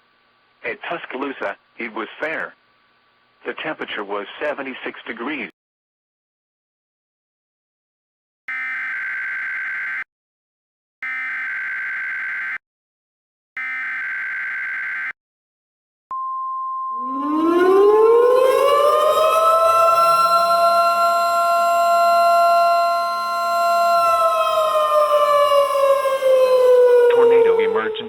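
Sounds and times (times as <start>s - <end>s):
outdoor warning siren: 8.5s - 10.1s, 11.0s - 12.6s, 13.6s - 15.2s, 16.9s - 28.0s
steady warning alarm tone: 8.5s - 10.1s, 11.0s - 12.6s, 13.6s - 15.2s, 17.0s - 28.0s.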